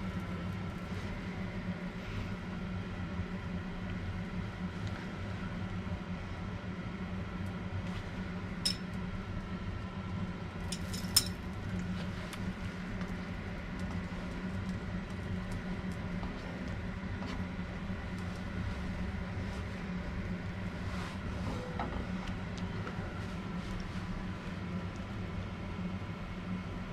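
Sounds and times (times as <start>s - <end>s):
steady low hum: 0.0s - 26.9s
kitchenware clinking: 10.7s - 11.4s.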